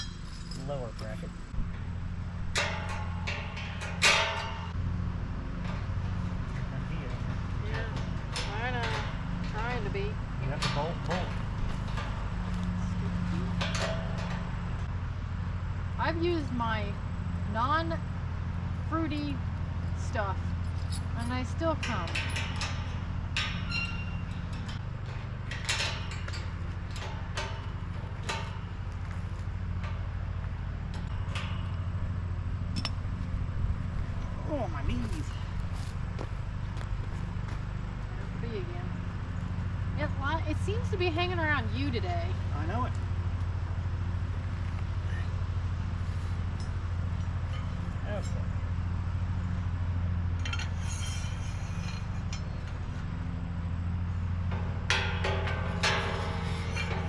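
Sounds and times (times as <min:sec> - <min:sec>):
metal hardware clinking: 0:00.0 - 0:04.8, 0:05.6 - 0:14.9, 0:19.2 - 0:33.3, 0:50.4 - 0:53.0, 0:54.4 - 0:57.0
low engine-like hum: 0:00.0 - 0:57.0.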